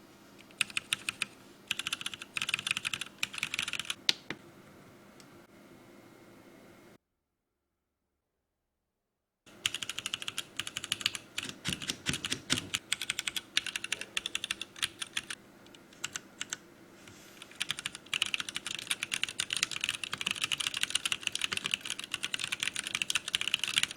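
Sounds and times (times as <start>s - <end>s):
mechanical keyboard typing: 0.6s - 4.0s, 9.6s - 15.4s, 16.0s - 16.6s, 17.4s - 23.9s.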